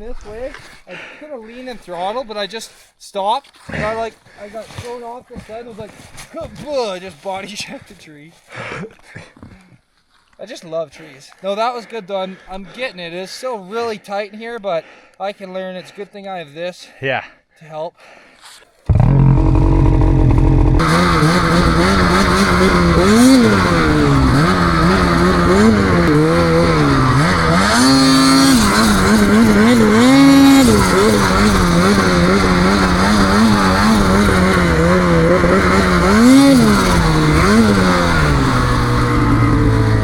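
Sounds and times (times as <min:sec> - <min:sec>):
snowmobile engine revving: 0:18.9 - 0:40.0.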